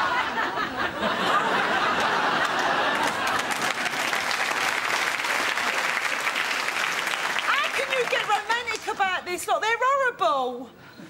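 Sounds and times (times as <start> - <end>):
studio audience laughing: 0.0 - 4.4
audience applauding: 1.7 - 9.1.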